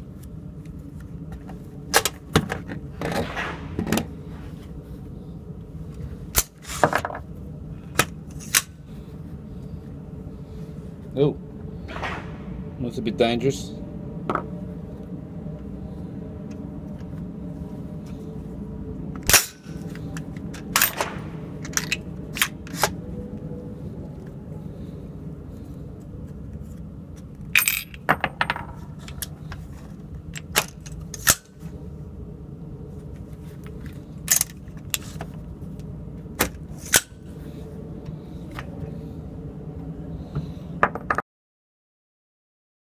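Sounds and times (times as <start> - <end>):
steady low hum: 0.0 - 41.2
rifle metallic clicks and bangs: 20.6 - 23.0.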